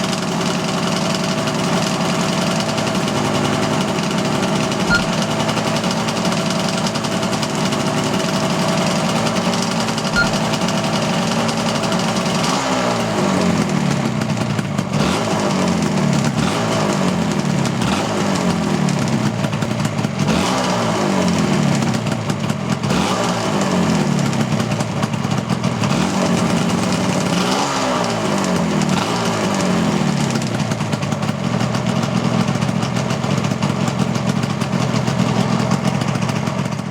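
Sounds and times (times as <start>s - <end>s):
motorcycle engine idling: 0.0s - 27.3s, 28.0s - 36.9s
engine revving: 2.6s - 14.2s, 14.9s - 19.1s, 20.2s - 21.8s, 22.8s - 24.1s, 25.8s - 30.1s.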